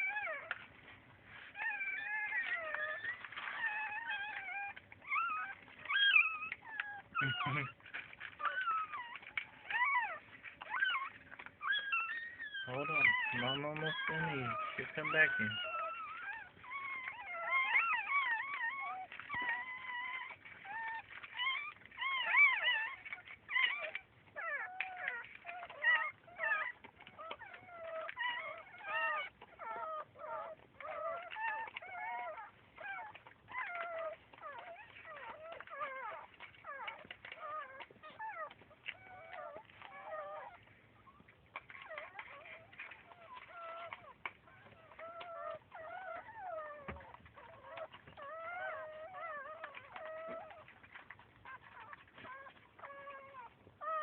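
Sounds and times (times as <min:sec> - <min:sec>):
baby animals whimpering: 0:00.0 - 0:54.0.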